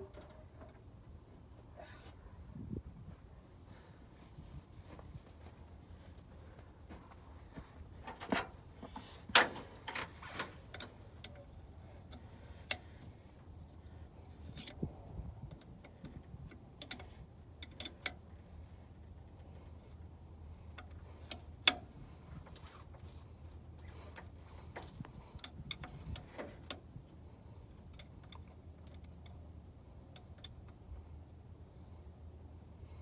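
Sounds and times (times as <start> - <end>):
hand tools clicking and knocking: 8.0 - 11.5.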